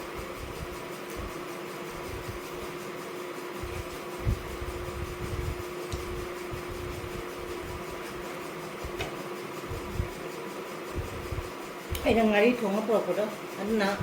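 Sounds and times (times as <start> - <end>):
fan running: 0.0 - 14.0
soft low thumps: 2.0 - 2.6, 3.6 - 8.0, 8.8 - 10.2, 10.9 - 12.3.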